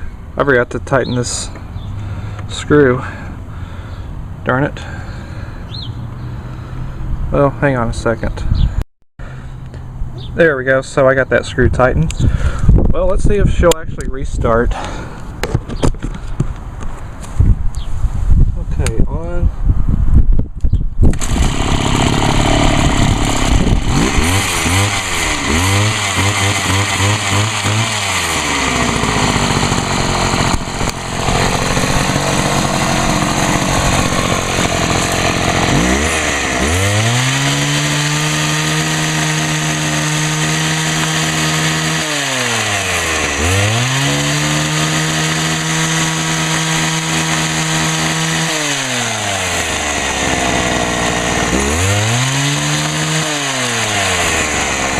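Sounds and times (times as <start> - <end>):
hedge trimmer engine revving: 21.1 - 54.9.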